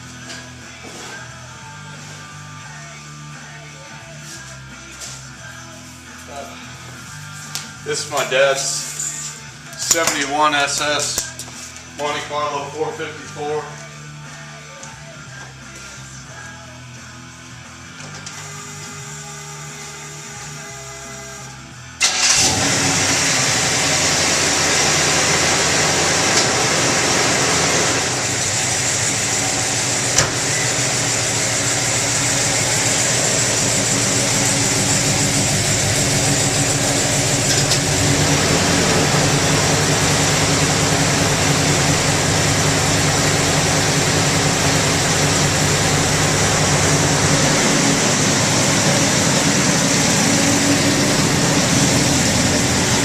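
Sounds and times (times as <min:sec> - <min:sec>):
car engine running: 0:22.0 - 0:53.0.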